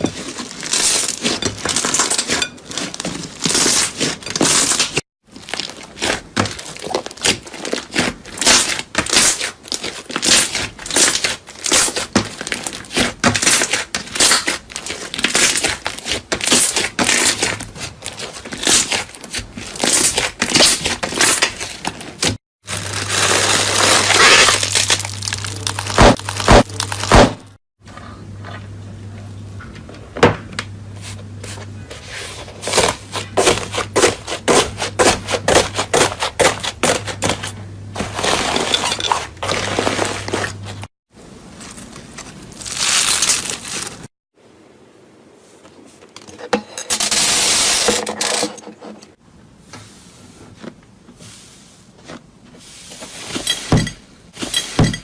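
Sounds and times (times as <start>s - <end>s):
slime crackling and crunching: 22.7s - 27.3s, 41.7s - 44.1s.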